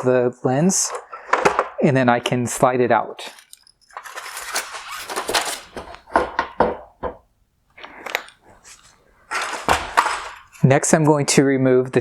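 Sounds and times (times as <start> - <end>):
hard plastic scraping: 0.7 - 2.5, 3.1 - 10.8
plastic clicks and knocks: 5.0 - 8.4.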